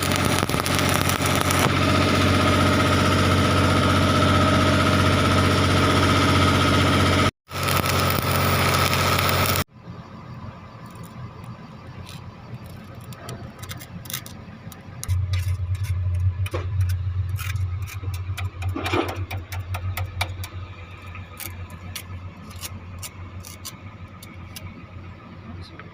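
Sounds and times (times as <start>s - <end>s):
welding clicks and crackles: 0.0s - 1.8s, 7.5s - 9.7s, 10.8s - 24.8s
arc welding hum: 0.0s - 25.4s.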